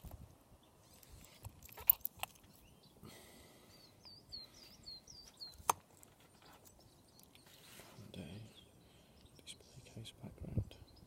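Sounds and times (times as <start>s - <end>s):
small bird chirping: 3.6s - 11.0s.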